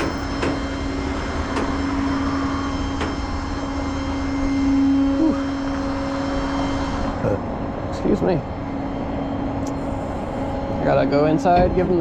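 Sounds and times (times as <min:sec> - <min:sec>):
engine drone: 0:00.0 - 0:12.0.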